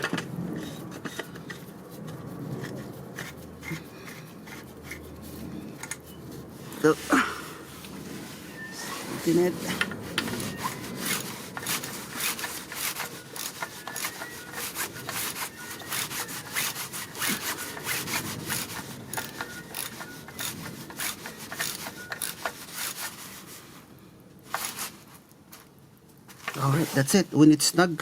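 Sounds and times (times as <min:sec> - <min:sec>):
ratchet wrench clicking: 0:10.4 - 0:23.0.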